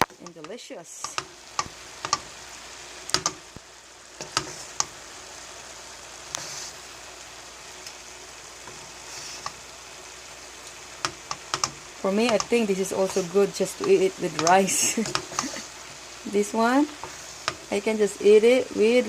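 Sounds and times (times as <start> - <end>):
utensil clicking against pan: 0.0 - 2.3, 3.1 - 3.4, 11.0 - 13.2, 13.8 - 15.6
filling sizzling in a frying pan: 0.0 - 19.0.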